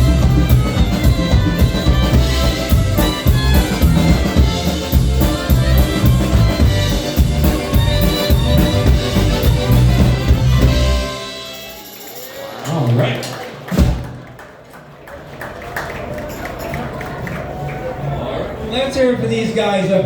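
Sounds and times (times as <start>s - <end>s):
polka band playing: 0.0s - 14.2s.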